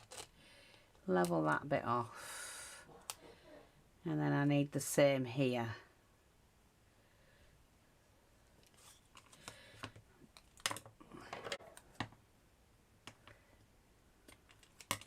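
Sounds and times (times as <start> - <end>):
small pieces clicking and tapping: 9.2 - 10.9, 14.2 - 15.0.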